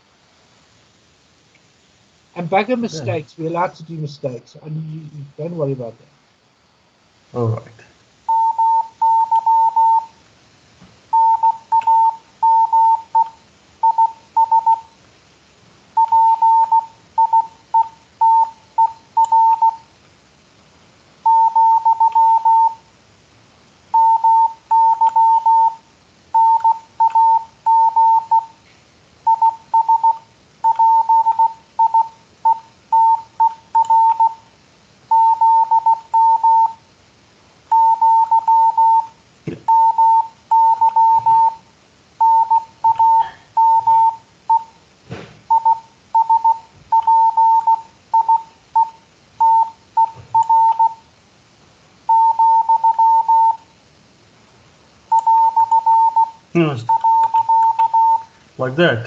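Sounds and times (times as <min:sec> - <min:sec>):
morse code beeps: 0:08.3 - 0:10.1, 0:11.1 - 0:14.9, 0:16.0 - 0:19.8, 0:21.2 - 0:22.8, 0:23.9 - 0:25.8, 0:26.4 - 0:28.5, 0:29.3 - 0:34.4, 0:35.1 - 0:36.8, 0:37.7 - 0:39.1, 0:39.7 - 0:41.6, 0:42.2 - 0:44.8, 0:45.5 - 0:51.0, 0:52.1 - 0:53.6, 0:55.1 - 0:58.3.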